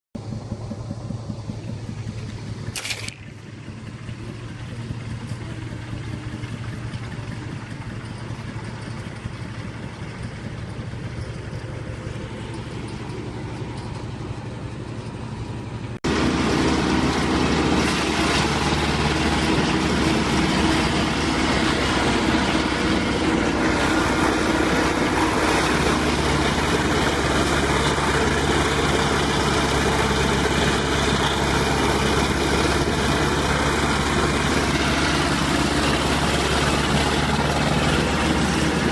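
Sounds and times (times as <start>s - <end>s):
wood chipper engine running: 0.2s - 38.9s.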